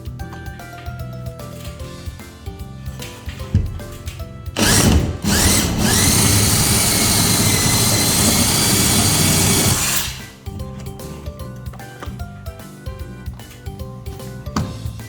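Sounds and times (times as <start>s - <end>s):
power drill boring through wall: 4.6s - 10.4s.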